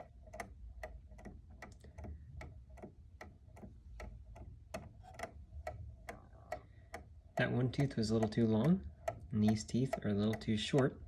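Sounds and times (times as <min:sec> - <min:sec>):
clock ticking: 0:00.0 - 0:11.0.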